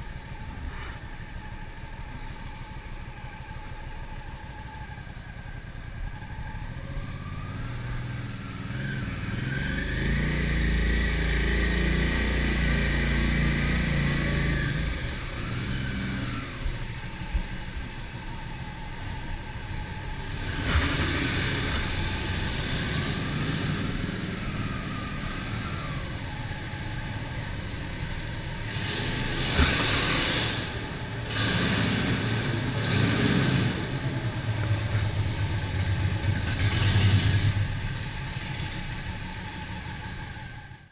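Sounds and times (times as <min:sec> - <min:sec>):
motorcycle engine revving: 0:06.4 - 0:40.9.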